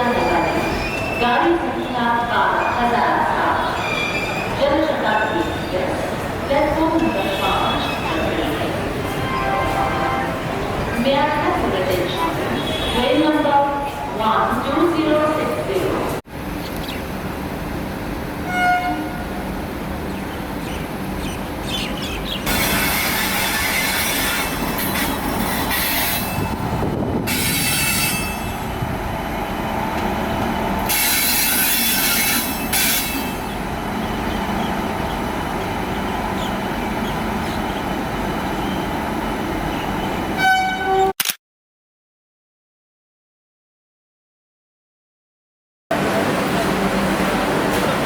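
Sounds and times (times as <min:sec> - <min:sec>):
train wheels rumbling: 0:00.0 - 0:40.9
train horn blast: 0:09.2 - 0:10.5, 0:18.4 - 0:19.4, 0:40.4 - 0:41.1.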